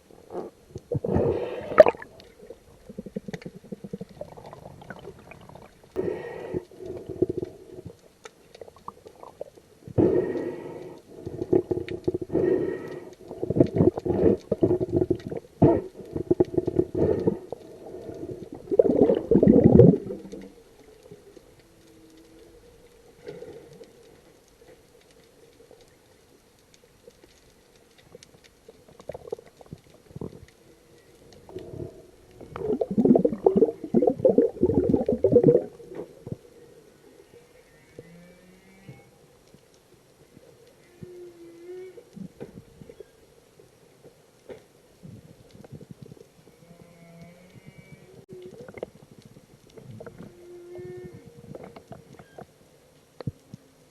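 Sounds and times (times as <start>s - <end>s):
whale moans and grunts underwater: 8.6s - 22.7s, 29.0s - 36.6s, 40.8s - 43.0s, 46.6s - 49.0s, 49.8s - 52.5s.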